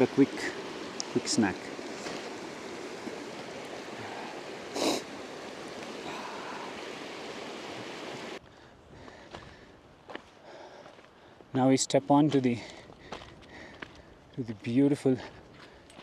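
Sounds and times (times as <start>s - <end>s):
stream rushing: 0.0s - 8.4s
person sniffing: 4.7s - 5.1s.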